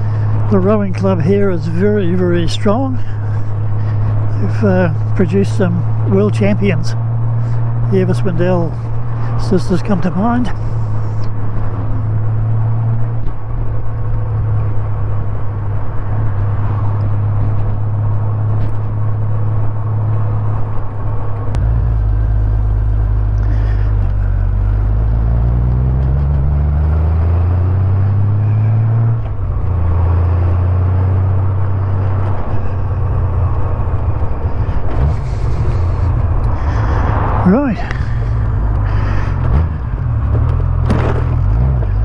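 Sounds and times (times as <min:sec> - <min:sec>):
motorcycle engine running: 0:21.6 - 0:26.5, 0:31.4 - 0:42.0.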